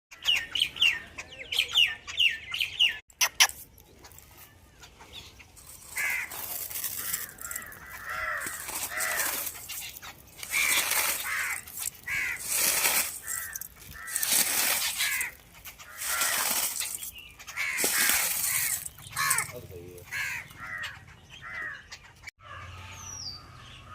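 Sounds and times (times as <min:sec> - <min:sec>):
crows cawing: 0:05.7 - 0:22.9.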